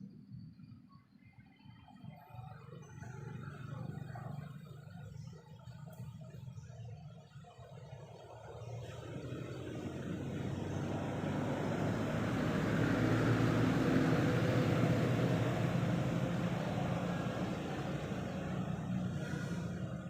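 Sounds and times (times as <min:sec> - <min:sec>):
vehicle passing by: 0:08.2 - 0:20.0.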